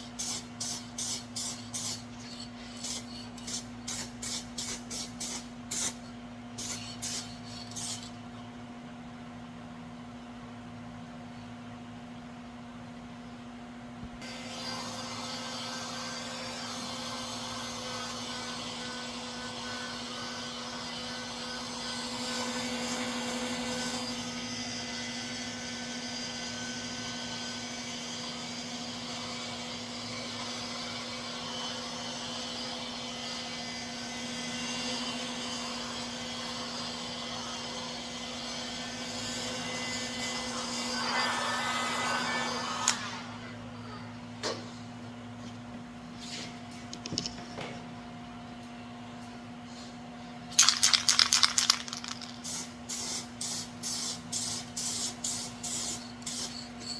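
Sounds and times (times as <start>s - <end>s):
machine humming and hissing: 14.2s - 45.3s.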